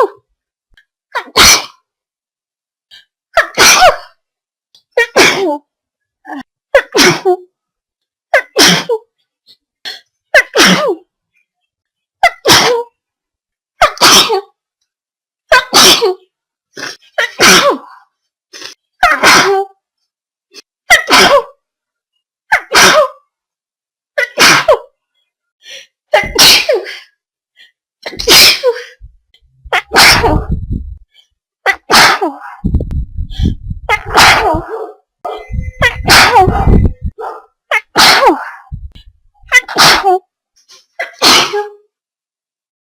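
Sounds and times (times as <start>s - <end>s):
person sneezing: 13.8s - 14.5s, 16.8s - 18.0s, 22.6s - 23.2s, 24.2s - 24.9s, 31.7s - 32.4s, 38.0s - 38.4s, 39.6s - 40.2s, 40.9s - 41.8s
low rumble: 30.4s - 31.0s, 32.6s - 33.9s, 35.4s - 37.2s.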